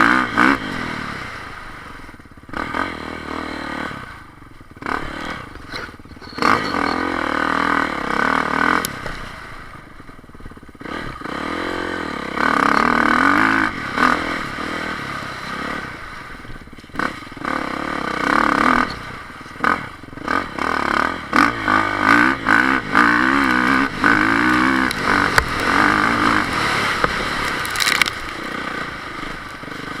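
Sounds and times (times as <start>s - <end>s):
motorcycle engines revving: 0.0s - 30.0s
clattering and scraping: 5.6s - 7.2s.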